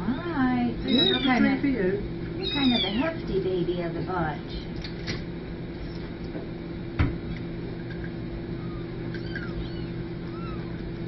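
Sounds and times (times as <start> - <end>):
steady low hum: 0.0 - 11.0
kittens squeaking: 0.8 - 1.6, 2.4 - 3.2, 8.4 - 11.0.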